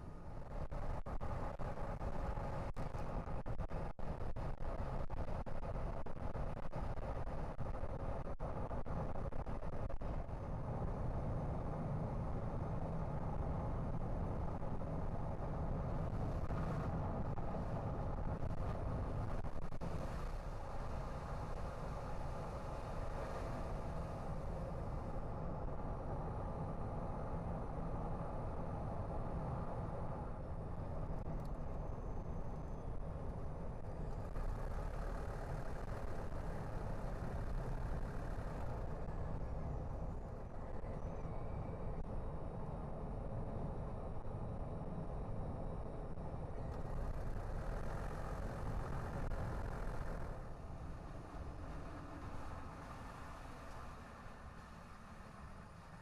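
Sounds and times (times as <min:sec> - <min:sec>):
road and tyre rumble: 0:00.0 - 0:56.0.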